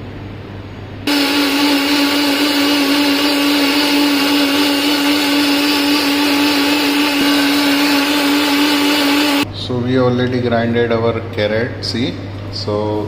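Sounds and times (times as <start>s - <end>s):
electric kitchen grinder running: 1.1s - 9.5s.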